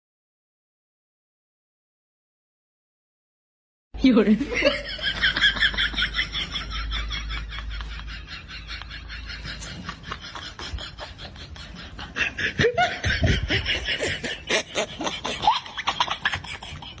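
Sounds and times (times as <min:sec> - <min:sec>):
person laughing breathily: 0:07.7 - 0:17.0.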